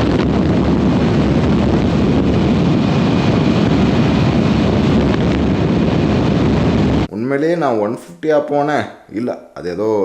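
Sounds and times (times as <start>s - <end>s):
wind rushing over microphone: 0.0s - 7.1s.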